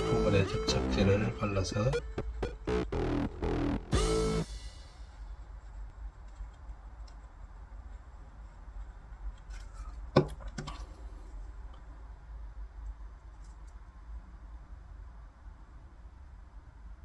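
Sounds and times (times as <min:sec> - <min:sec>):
steady low hum: 0:00.0 - 0:09.3.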